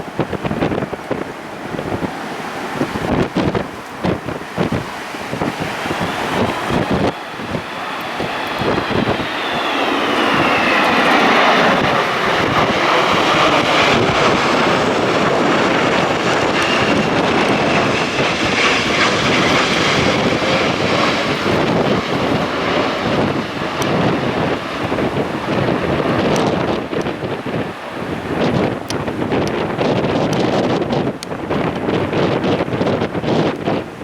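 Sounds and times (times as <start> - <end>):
jet engines passing close: 0.0 - 34.0.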